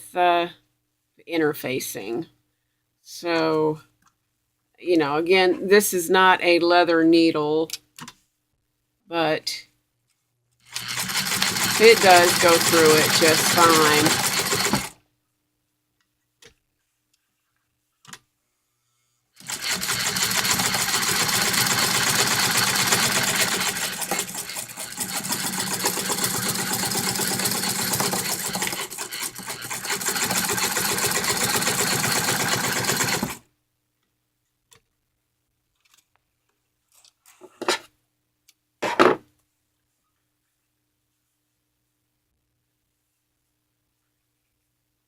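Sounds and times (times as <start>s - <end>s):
sewing machine stitching: 10.6s - 15.0s, 19.4s - 33.4s.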